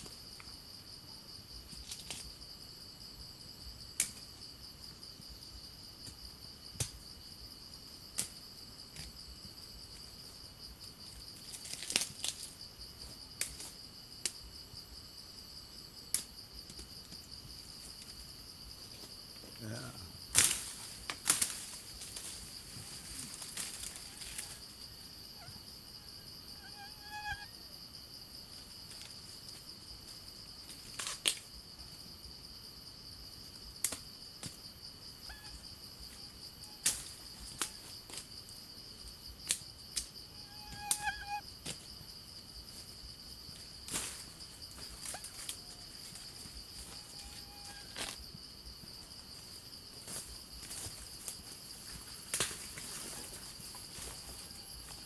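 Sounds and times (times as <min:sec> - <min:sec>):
insects droning: 0:00.0 - 0:55.0
sharp snaps and cracks: 0:04.0 - 0:04.2, 0:11.5 - 0:12.5, 0:20.3 - 0:22.3, 0:30.7 - 0:31.5, 0:33.8 - 0:34.6, 0:52.3 - 0:52.9.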